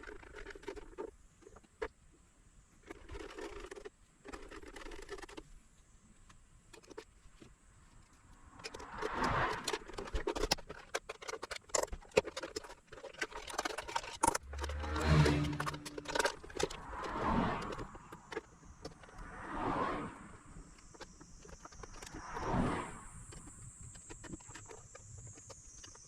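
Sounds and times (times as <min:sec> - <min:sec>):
hard parts clicking and scraping: 0:00.0 - 0:02.0, 0:02.8 - 0:19.4, 0:20.4 - 0:22.4, 0:23.2 - 0:26.0
low motor hum: 0:14.2 - 0:18.2.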